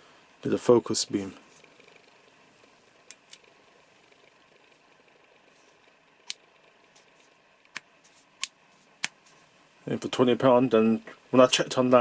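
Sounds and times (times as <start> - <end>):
torch clicks: 1.9 - 3.5, 6.2 - 6.4.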